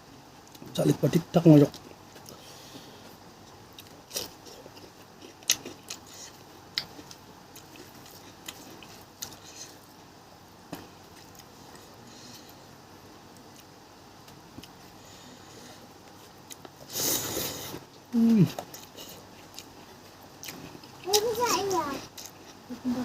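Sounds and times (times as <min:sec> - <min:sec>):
person chewing: 0:03.4 - 0:09.9, 0:14.5 - 0:14.8, 0:16.0 - 0:21.4, 0:22.0 - 0:22.7.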